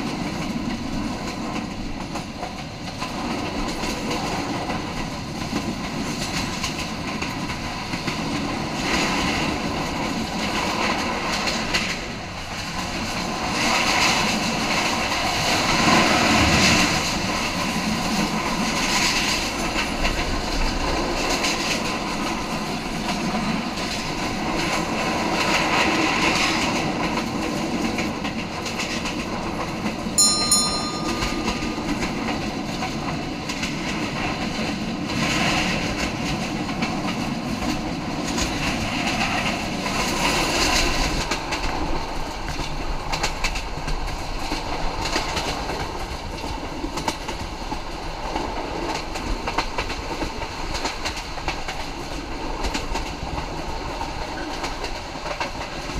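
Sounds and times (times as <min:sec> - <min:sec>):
train rumble: 0:00.0 - 0:55.9
brief high tone: 0:30.2 - 0:33.0.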